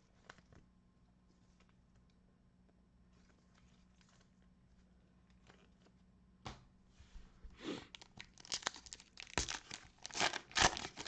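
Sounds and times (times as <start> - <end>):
cellophane pack being torn open: 7.9 - 11.0
plastic wrapper crinkling: 7.9 - 11.0.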